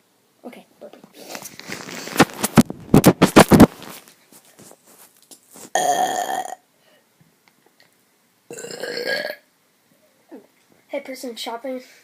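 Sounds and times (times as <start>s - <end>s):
person burping: 5.7s - 6.7s, 8.5s - 9.5s.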